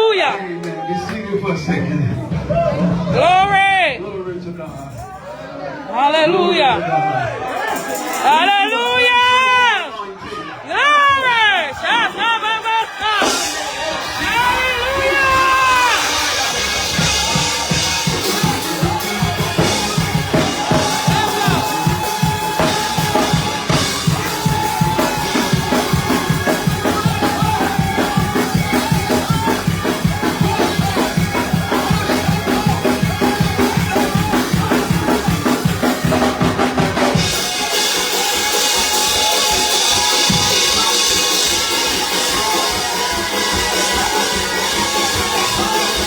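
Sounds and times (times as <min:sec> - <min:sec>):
drum kit beat: 0:10.8 - 0:46.0
sustained keyboard chords: 0:12.2 - 0:46.0.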